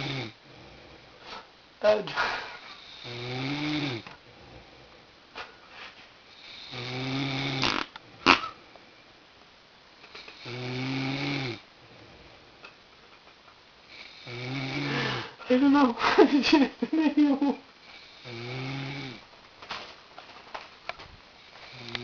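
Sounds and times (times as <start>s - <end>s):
man snoring: 0.0s - 0.4s, 2.8s - 4.1s, 6.4s - 7.9s, 10.4s - 11.6s, 13.9s - 15.4s, 18.0s - 19.2s, 21.7s - 22.0s.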